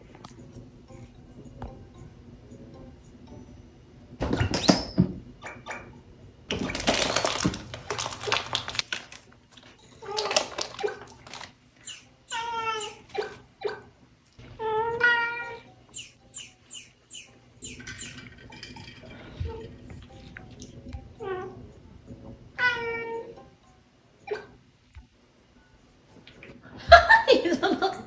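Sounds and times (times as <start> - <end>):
kitten meowing: 12.3 - 13.0.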